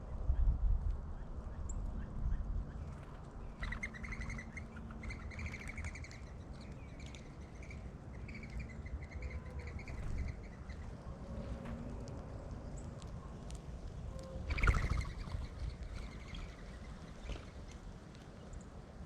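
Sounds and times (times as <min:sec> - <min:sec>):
steady low rumble: 0:00.0 - 0:19.0
bird chirping: 0:03.6 - 0:11.0, 0:14.5 - 0:17.8.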